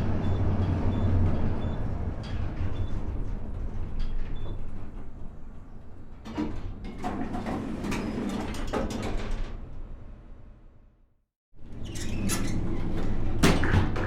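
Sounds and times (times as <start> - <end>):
elevator mechanism clattering: 0.0 - 10.2
elevator low rumble: 0.0 - 10.8.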